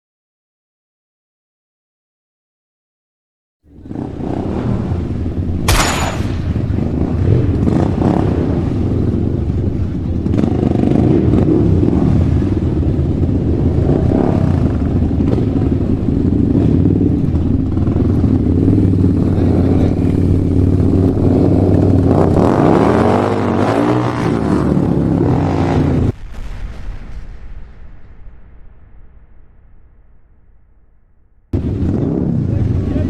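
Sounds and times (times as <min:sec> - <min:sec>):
engine rumbling: 0:03.7 - 0:26.2, 0:30.6 - 0:33.0.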